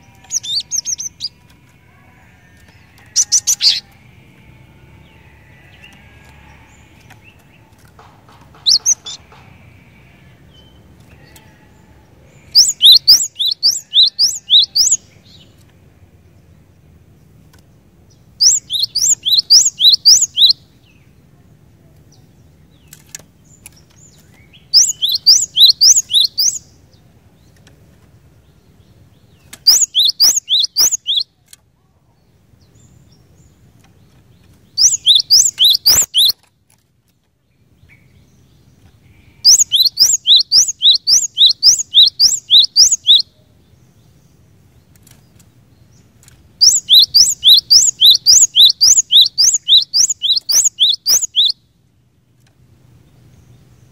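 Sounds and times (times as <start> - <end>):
bird singing sharp notes: 8.6 - 9.2, 10.5 - 15.5, 18.4 - 20.6, 24.4 - 26.7, 29.4 - 31.3, 34.8 - 36.5, 39.4 - 43.3, 46.6 - 51.6.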